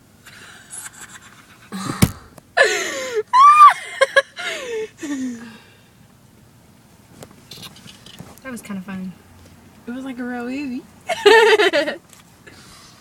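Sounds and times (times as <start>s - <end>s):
people screaming playfully: 3.3s - 3.9s.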